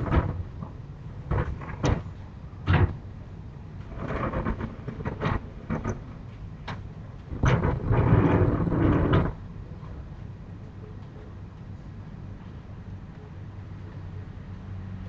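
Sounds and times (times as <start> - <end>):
knocking and banging: 0.0 - 3.0, 3.9 - 9.4
rapid rumbling clatter: 0.0 - 11.3
steady low hum: 0.0 - 15.0.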